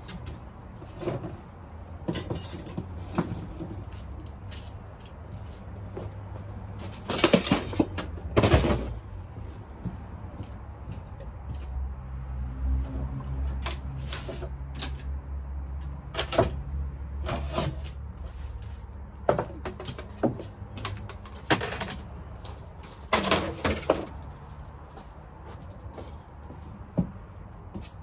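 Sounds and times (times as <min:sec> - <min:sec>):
hard objects knocking and scraping: 0:00.1 - 0:04.6, 0:19.2 - 0:28.0.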